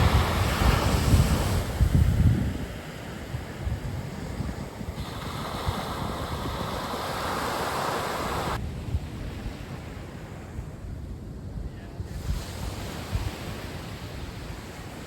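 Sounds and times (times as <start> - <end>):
ocean surf rushing: 0.0 - 10.8
wind on microphone: 0.0 - 15.0.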